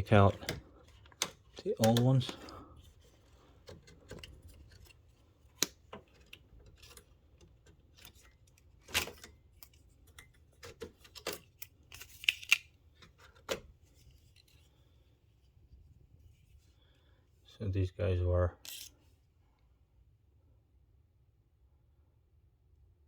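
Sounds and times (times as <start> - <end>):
plastic latch clicks and snaps: 0.3 - 2.5.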